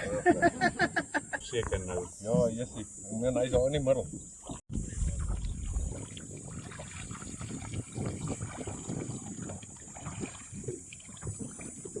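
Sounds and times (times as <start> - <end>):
water splashing and lapping: 3.8 - 12.0.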